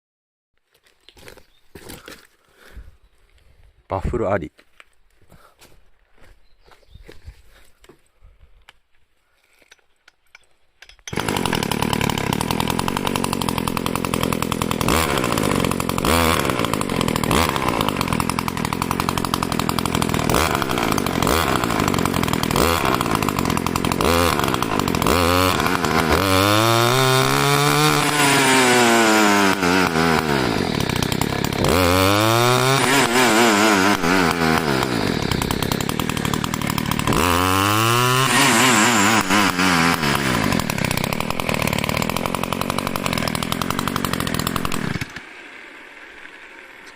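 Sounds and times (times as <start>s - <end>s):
brush cutter engine revving: 11.0s - 46.9s.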